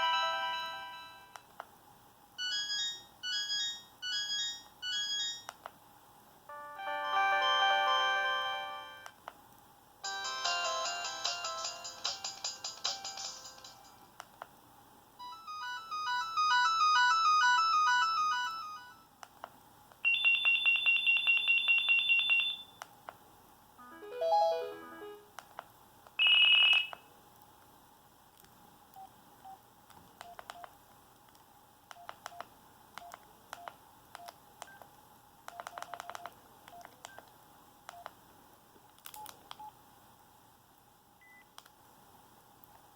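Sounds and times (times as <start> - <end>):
phone ringtones from small speaker: 20.0 - 22.8, 26.2 - 27.0.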